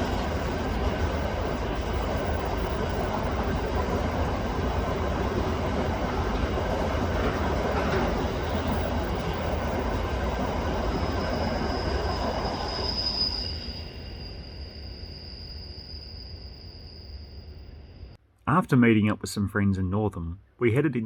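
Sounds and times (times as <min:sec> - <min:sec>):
train wheels rumbling on track: 0:00.0 - 0:14.8.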